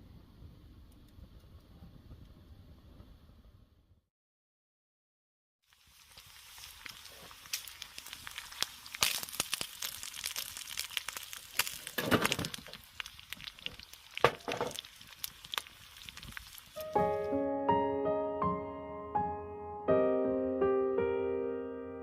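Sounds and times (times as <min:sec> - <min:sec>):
campfire crackling: 0:05.6 - 0:17.4
fire popping and snapping: 0:05.7 - 0:17.3.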